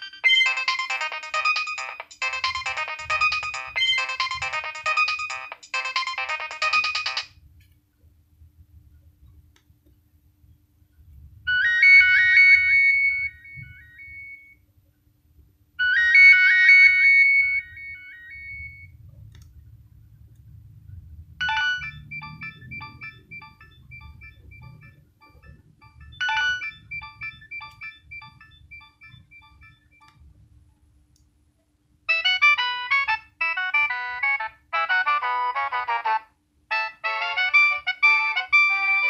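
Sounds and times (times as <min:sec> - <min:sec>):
mobile phone ringtones: 0:00.0 - 0:07.3, 0:11.5 - 0:14.6, 0:15.8 - 0:18.9, 0:21.4 - 0:30.1, 0:32.1 - 0:39.0.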